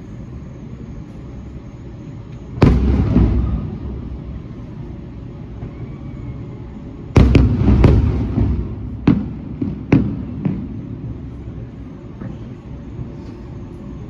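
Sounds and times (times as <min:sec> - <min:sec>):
fireworks banging: 0:02.5 - 0:05.1, 0:07.1 - 0:11.4.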